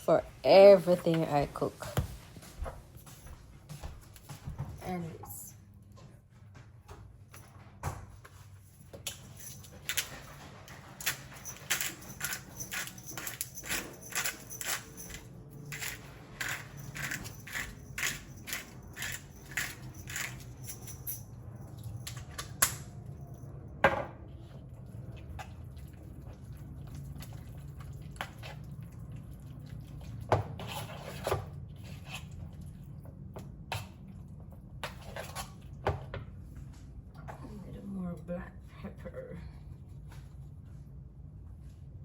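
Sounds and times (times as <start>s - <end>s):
low steady hum: 0.0s - 42.0s
knocks and clinks: 8.8s - 24.0s.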